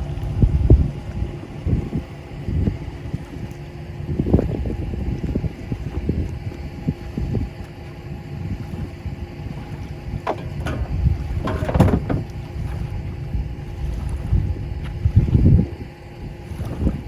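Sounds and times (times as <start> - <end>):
outboard motor running: 0.0 - 17.0
wind buffeting microphone: 0.0 - 17.0
sharp knocks or splashes: 10.2 - 12.5.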